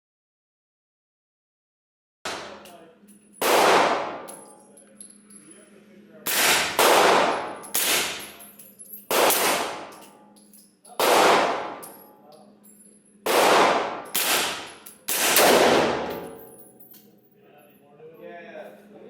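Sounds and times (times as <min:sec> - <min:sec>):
gunshots with reverberation: 0:02.3 - 0:02.6, 0:03.4 - 0:04.4, 0:06.3 - 0:08.4, 0:09.1 - 0:10.0, 0:11.0 - 0:12.0, 0:13.2 - 0:16.4.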